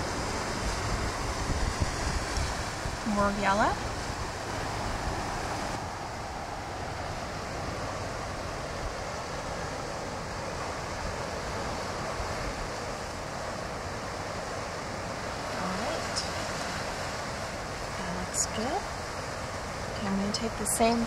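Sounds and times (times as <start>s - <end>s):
ocean surf on rocks: 0.0s - 21.0s
wind noise on microphone: 0.0s - 21.0s.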